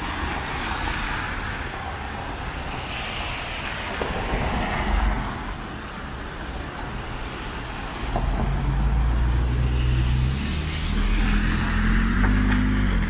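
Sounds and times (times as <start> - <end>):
vehicle passing: 8.4 - 13.0
heavy vehicle engine droning: 8.5 - 13.0.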